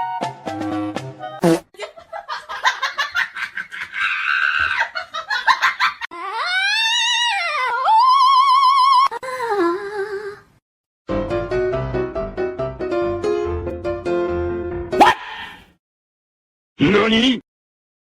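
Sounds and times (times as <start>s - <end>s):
laughter in bursts: 1.7s - 6.1s
high wavering cry: 15.0s - 15.6s.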